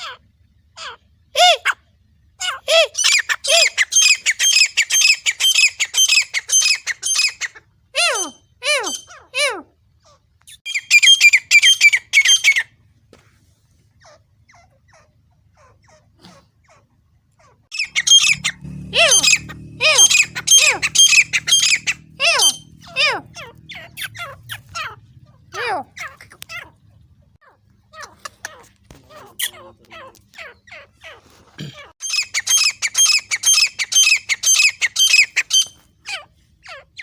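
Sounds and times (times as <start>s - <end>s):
francolin calling: 3.0s - 9.3s, 10.5s - 12.7s, 17.7s - 27.0s.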